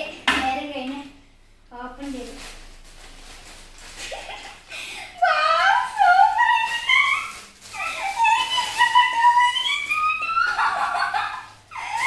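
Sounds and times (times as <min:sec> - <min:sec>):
child squealing: 0:05.2 - 0:11.0, 0:11.7 - 0:12.0.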